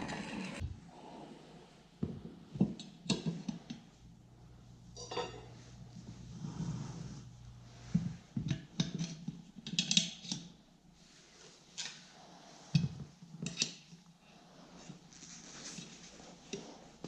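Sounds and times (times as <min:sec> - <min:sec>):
faint steady hum: 0:00.0 - 0:17.0
metal tools clinking and scraping: 0:05.0 - 0:05.6.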